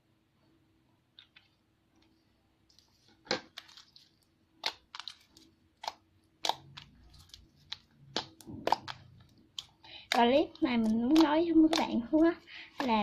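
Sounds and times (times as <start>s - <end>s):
slime squishing and popping: 3.3s - 13.0s.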